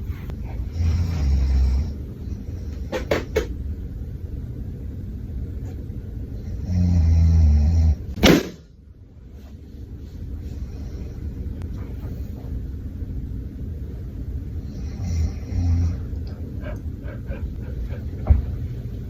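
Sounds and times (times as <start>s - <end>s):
person snoring: 0.7s - 2.0s
balloon pop: 8.2s - 8.7s.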